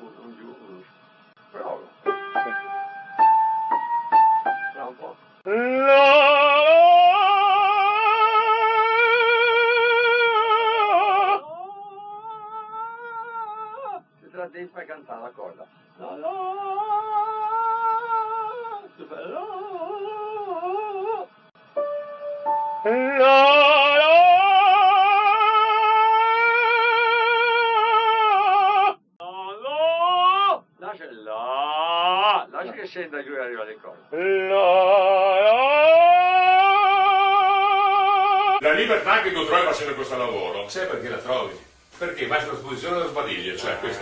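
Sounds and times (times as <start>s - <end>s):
operatic voice singing sustained note: 5.5s - 11.4s, 22.8s - 28.6s.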